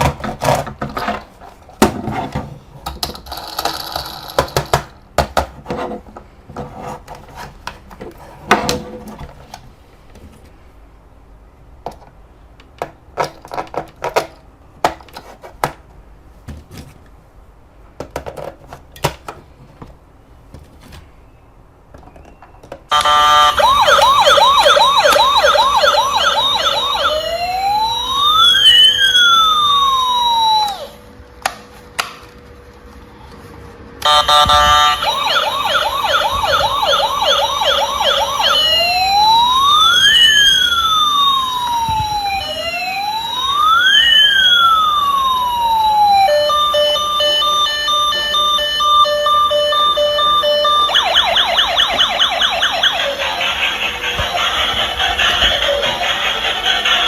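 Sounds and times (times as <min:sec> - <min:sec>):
toy electronic siren: 0:22.9 - 0:31.0, 0:34.0 - 0:57.0.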